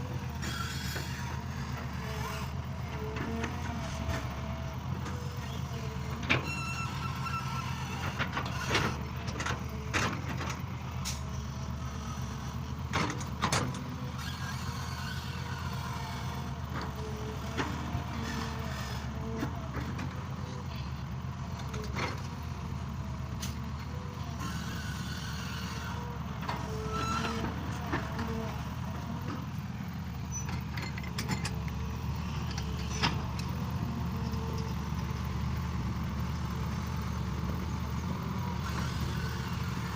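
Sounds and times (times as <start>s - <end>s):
excavator diesel engine: 0.0s - 39.9s
short squeaks: 0.4s - 4.3s, 5.1s - 12.2s, 13.1s - 20.6s, 23.4s - 29.5s, 30.1s - 33.5s.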